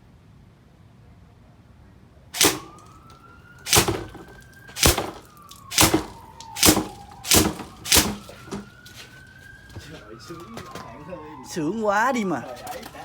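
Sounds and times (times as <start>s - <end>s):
airsoft rifle shots: 2.4s - 3.1s, 3.7s - 8.7s
faint siren wailing: 2.4s - 13.0s.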